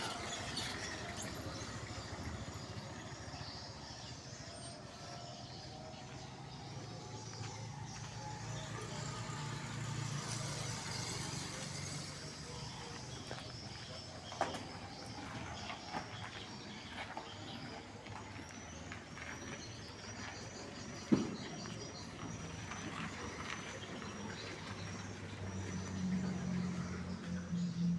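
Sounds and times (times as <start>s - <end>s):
birds chirping: 0.0s - 27.9s
van engine idling: 0.0s - 27.9s.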